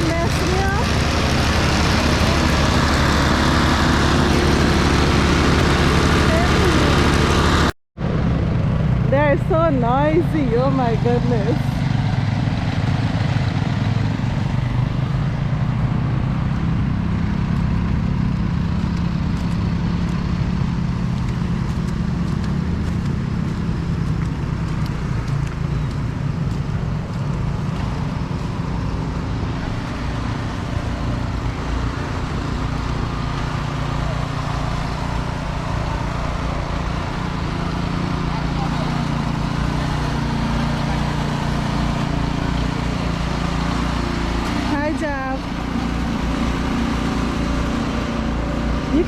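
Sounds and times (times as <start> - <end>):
snowblower engine running: 0.0 - 49.0.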